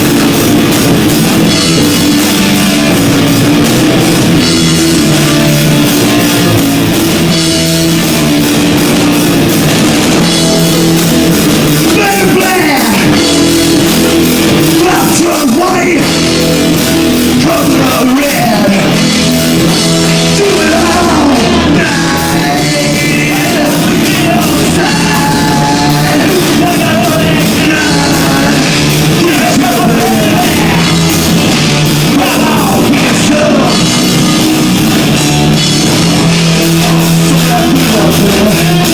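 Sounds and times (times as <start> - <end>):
distorted rock band playing: 0.0 - 38.9
drums: 0.0 - 38.9
guitar: 0.0 - 38.9
person singing: 10.6 - 38.9.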